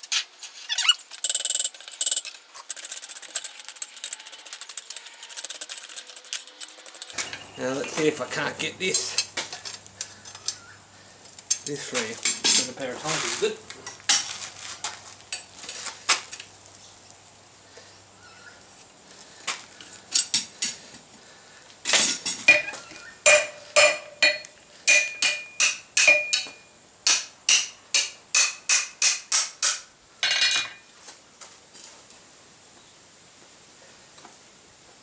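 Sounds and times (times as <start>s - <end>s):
hammer striking steel: 22.5s - 29.8s.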